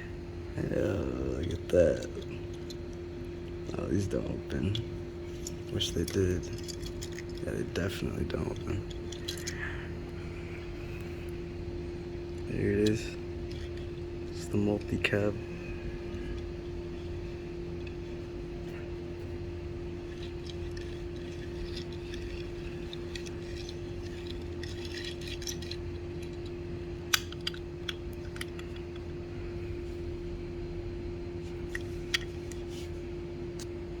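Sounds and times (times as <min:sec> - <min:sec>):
steady background hum: 0:00.0 - 0:34.0
toy car clicks and clinks: 0:09.1 - 0:09.6, 0:20.1 - 0:26.5, 0:27.1 - 0:29.0.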